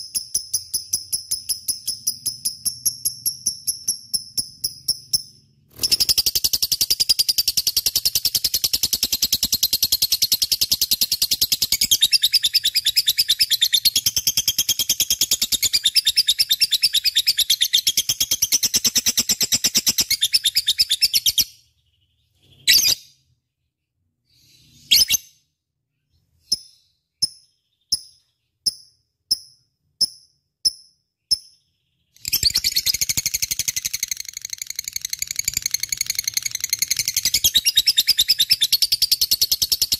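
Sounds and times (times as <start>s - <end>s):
short bird chirps: 0.0s - 9.4s, 18.7s - 39.9s.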